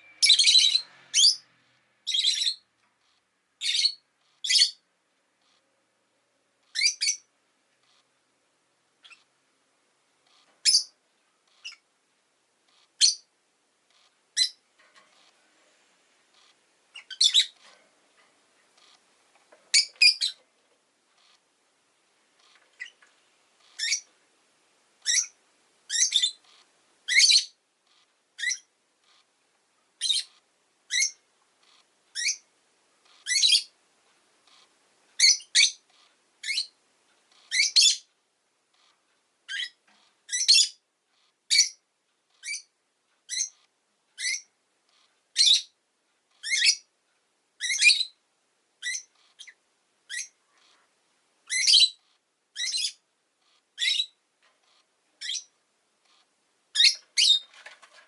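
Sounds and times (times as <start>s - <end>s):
lovebird chirping: 0.0s - 5.6s, 6.6s - 8.1s, 9.0s - 9.3s, 10.2s - 11.9s, 12.7s - 13.3s, 13.9s - 15.3s, 16.3s - 17.6s, 19.7s - 20.5s, 22.4s - 23.0s, 23.6s - 24.1s, 25.0s - 29.3s, 30.0s - 33.8s, 34.5s - 38.1s, 39.5s - 46.9s, 47.6s - 48.2s, 48.8s - 50.8s, 51.4s - 57.6s.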